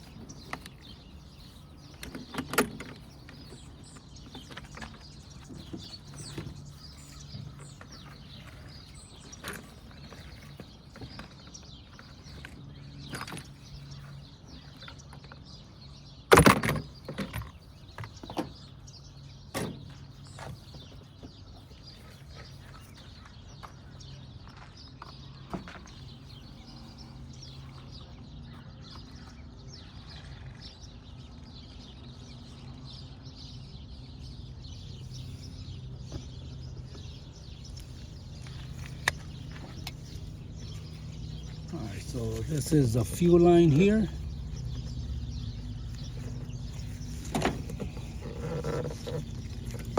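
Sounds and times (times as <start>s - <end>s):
hand tools clicking and clanking: 0.0s - 14.2s, 36.1s - 49.9s.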